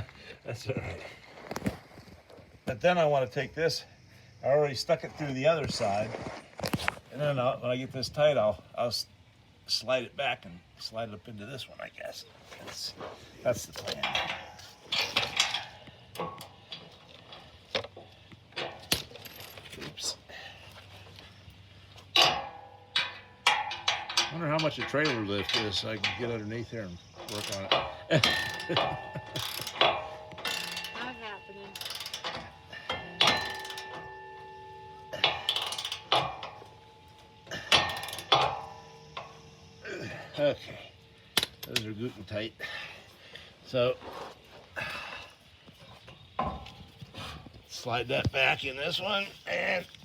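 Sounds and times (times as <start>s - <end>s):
wrench clanking on steel hitch: 13.5s - 20.2s, 22.0s - 42.0s
metallic tool clinks: 27.3s - 39.8s.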